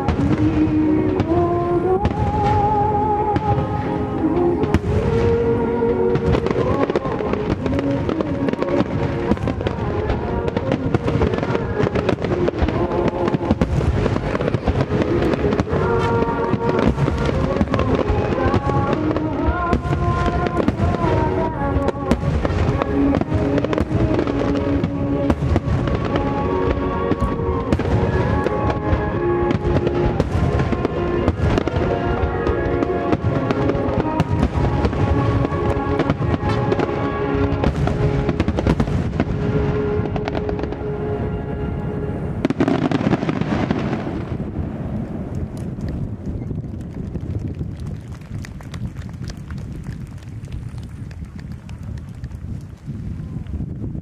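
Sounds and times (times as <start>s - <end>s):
fireworks bursting with sharp bangs: 0.0s - 54.0s.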